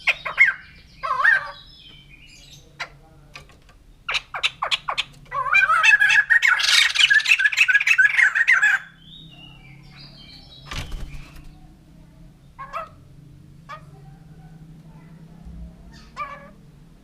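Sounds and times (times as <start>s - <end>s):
faint bird calls: 12.4s - 16.7s.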